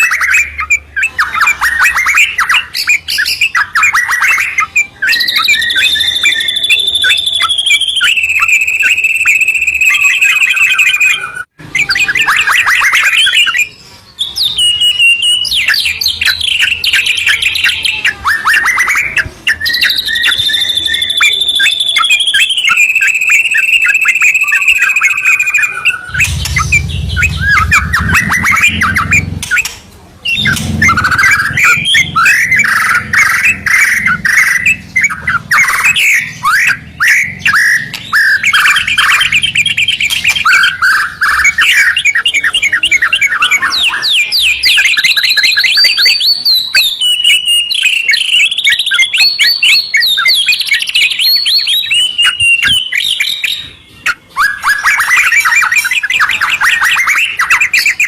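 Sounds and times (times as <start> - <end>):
birds singing trills and whistles: 0.0 - 58.0
low rumble: 26.1 - 29.6, 30.3 - 35.9.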